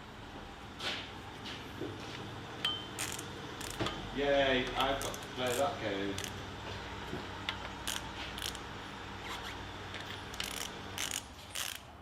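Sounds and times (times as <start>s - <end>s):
steady low hum: 0.0s - 11.8s
ratchet tools clicking on metal: 2.7s - 4.0s, 4.7s - 6.4s, 7.8s - 8.6s, 10.0s - 12.0s.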